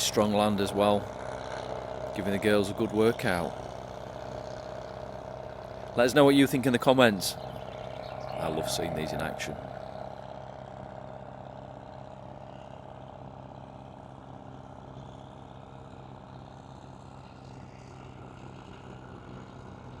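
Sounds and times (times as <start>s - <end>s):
tractor engine under load: 0.0s - 11.1s.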